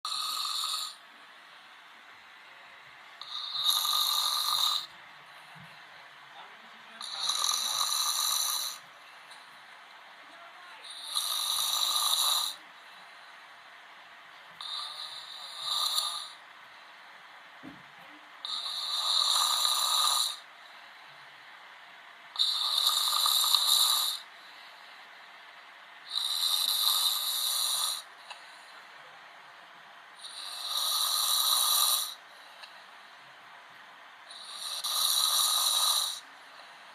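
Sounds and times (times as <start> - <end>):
man snoring: 0.0 - 1.0, 3.2 - 4.9, 7.0 - 8.9, 10.8 - 12.6, 14.6 - 16.4, 18.4 - 20.5, 22.4 - 24.3, 26.0 - 28.1, 30.2 - 32.2, 34.3 - 36.3
quiet breathing: 0.0 - 17.5, 18.1 - 36.9.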